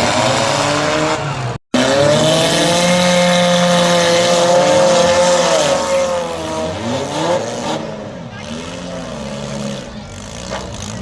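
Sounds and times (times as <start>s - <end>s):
car engines revving hard: 0.0s - 11.0s.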